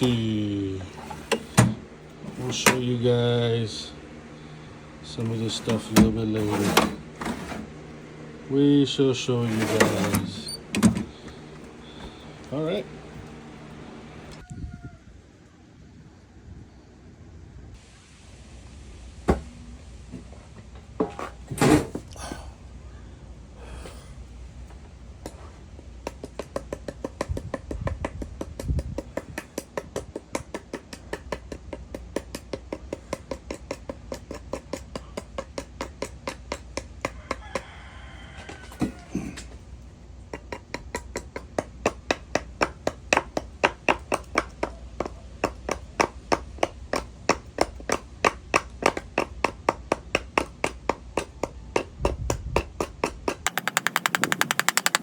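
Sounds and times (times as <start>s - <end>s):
rapid sharp clicks: 53.3s - 55.0s.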